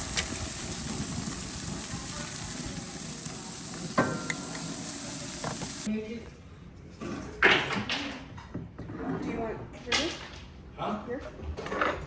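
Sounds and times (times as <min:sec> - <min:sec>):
dishes clinking: 0:03.9 - 0:05.8.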